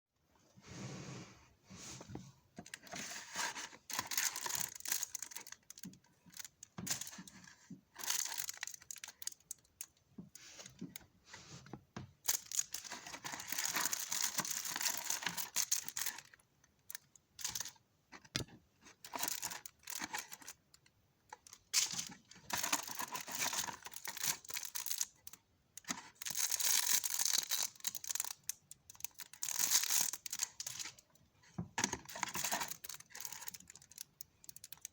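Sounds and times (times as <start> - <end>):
plastic packaging crinkling and tearing: 12.3 - 16.3, 21.8 - 25.2, 26.1 - 30.9.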